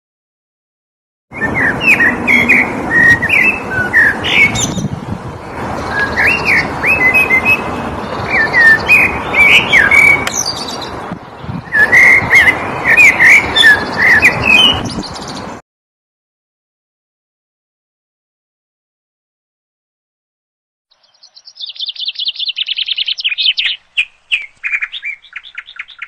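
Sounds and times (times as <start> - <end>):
songbird chirping and whistling: 1.3 - 4.9, 5.8 - 15.5, 20.9 - 26.0.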